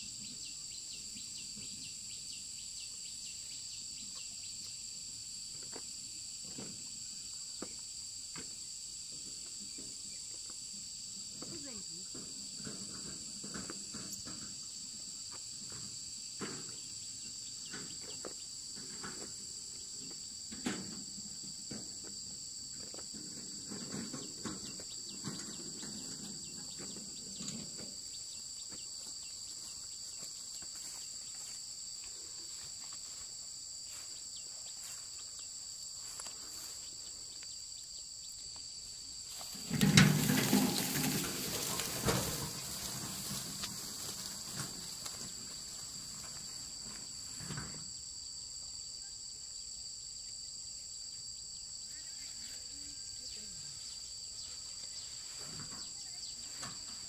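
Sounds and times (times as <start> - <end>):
high-pitched insect chorus: 0.0 - 57.0
soft rustles and knocks: 39.3 - 47.9
loud rustling and thumping: 39.4 - 47.8.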